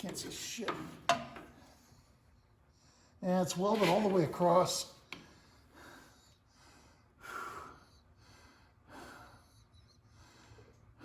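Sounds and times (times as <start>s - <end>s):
man breathing softly: 5.2s - 11.0s.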